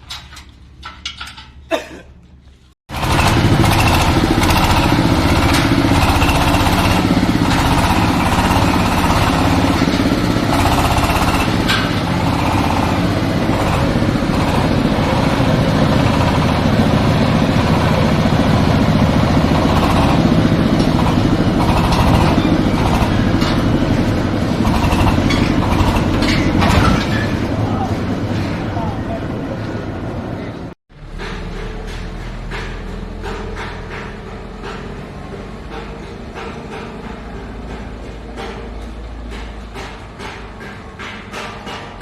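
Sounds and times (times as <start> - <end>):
corn sheller machine running: 2.9 - 28.3.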